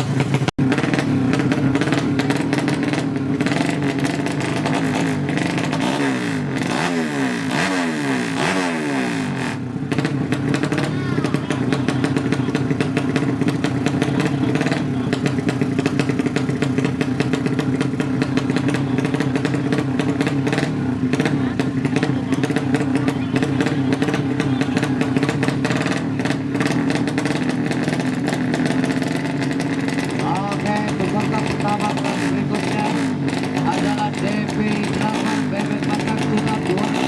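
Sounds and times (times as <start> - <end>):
motorcycle engine running steadily: 0.0 - 37.0.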